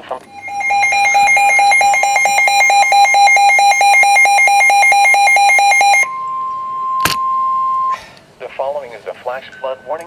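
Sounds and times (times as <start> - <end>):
steady single-pitch tone: 0.2 - 8.0
warbling two-pitch alarm: 0.3 - 8.0.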